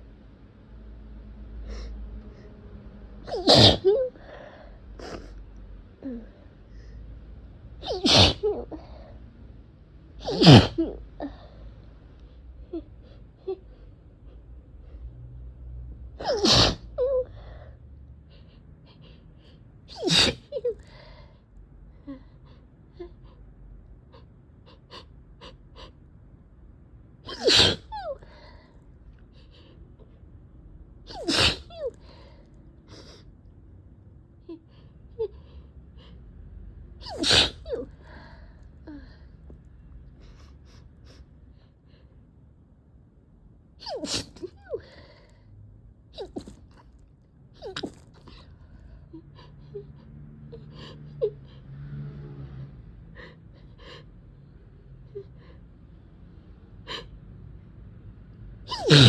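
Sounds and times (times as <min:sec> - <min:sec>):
person sneezing: 0:03.3 - 0:04.0, 0:07.8 - 0:08.7, 0:10.2 - 0:11.0, 0:16.2 - 0:17.0, 0:19.9 - 0:20.6, 0:27.3 - 0:27.9, 0:31.1 - 0:32.0, 0:37.0 - 0:37.7, 0:43.8 - 0:44.6, 0:46.2 - 0:46.6, 0:58.7 - 0:59.0.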